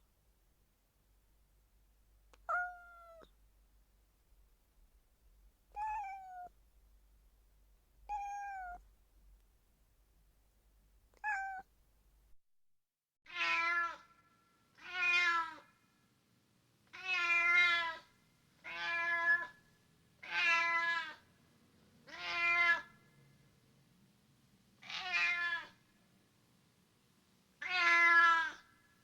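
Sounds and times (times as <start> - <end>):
cat meowing: 2.4 - 3.3, 5.7 - 6.5, 8.1 - 8.8, 11.2 - 11.7, 13.3 - 14.1, 14.8 - 15.7, 16.9 - 19.6, 20.2 - 21.2, 22.0 - 23.0, 24.8 - 25.8, 27.6 - 28.7
tom cat long drawn out meows: 2.5 - 3.3, 11.2 - 11.6, 13.3 - 14.1, 14.8 - 15.7, 16.9 - 19.6, 22.0 - 22.9, 24.8 - 25.8, 27.6 - 28.7.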